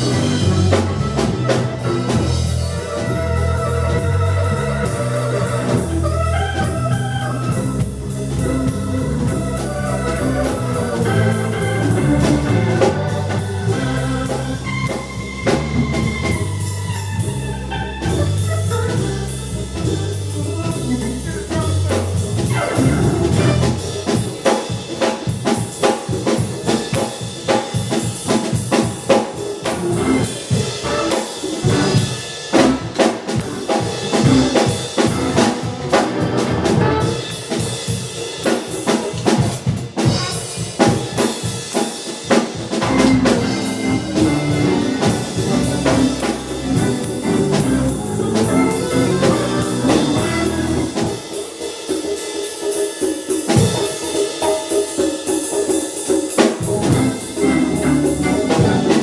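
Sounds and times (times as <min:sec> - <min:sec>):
low bass notes: 0:00.0 - 0:24.1, 0:29.8 - 0:31.1, 0:31.7 - 0:37.2, 0:42.8 - 0:51.1, 0:56.7 - 0:59.0
sustained organ chords: 0:00.0 - 0:51.6, 0:56.5 - 0:59.0
drum kit steady beat: 0:00.0 - 0:59.0.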